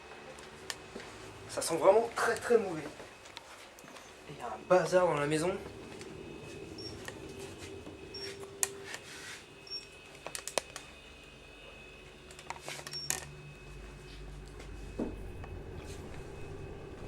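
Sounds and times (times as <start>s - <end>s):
faint steady hum: 0.0s - 17.0s
short high camera beeps: 9.7s - 9.9s.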